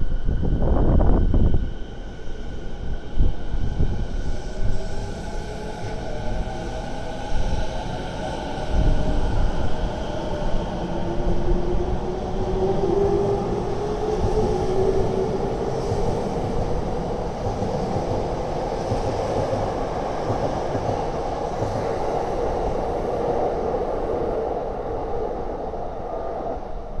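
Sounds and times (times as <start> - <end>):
electric train rumbling: 0.0 - 27.0.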